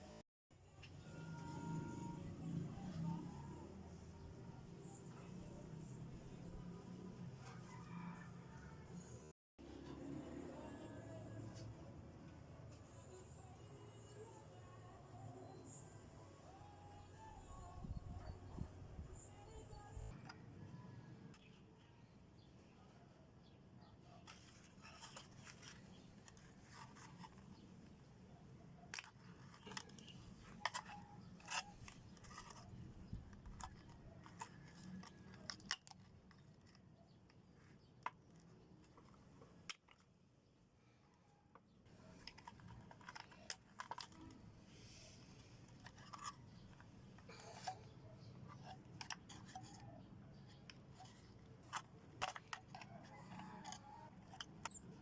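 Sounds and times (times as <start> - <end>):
clicks and scrapes of hand tools: 28.9 - 36.8, 42.1 - 55.0.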